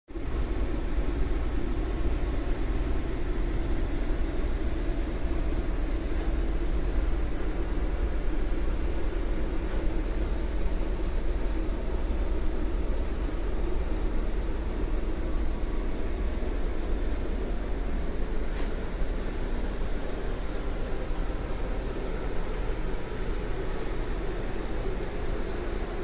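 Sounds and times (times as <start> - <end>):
boat engine droning: 11.0 - 26.0.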